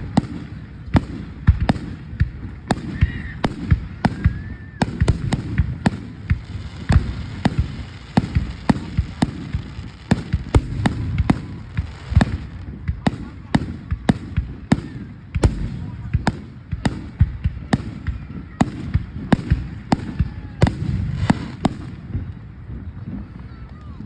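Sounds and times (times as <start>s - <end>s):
steady low rumble: 0.0s - 23.5s
fireworks bangs: 0.0s - 24.0s.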